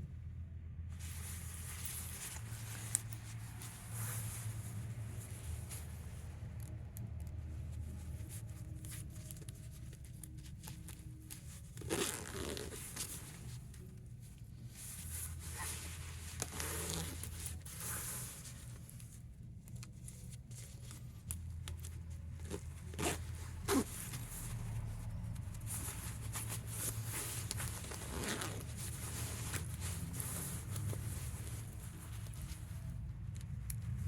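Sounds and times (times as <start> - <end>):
fabric zipper zipping: 11.7 - 13.2, 15.4 - 18.3, 22.4 - 24.5, 25.7 - 32.5.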